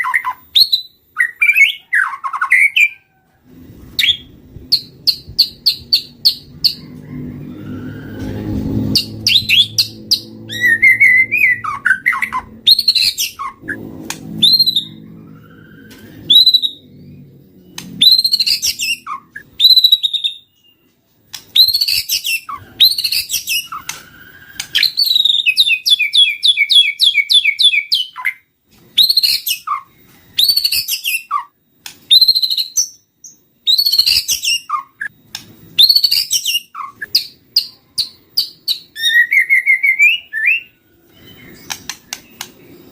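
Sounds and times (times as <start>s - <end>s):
low hum: 3.4s - 19.8s
bird singing whistled phrases: 9.0s - 13.8s, 17.8s - 20.8s, 32.1s - 35.1s, 38.0s - 42.4s.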